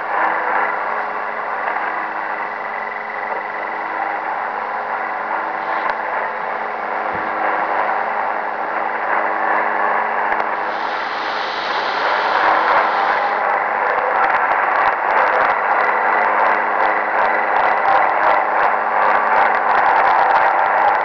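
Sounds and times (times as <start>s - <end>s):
steady humming tones: 0.0s - 21.0s
radio static: 10.4s - 14.2s
bright hiss: 10.5s - 13.5s
garbled distorted radio music: 10.5s - 18.8s.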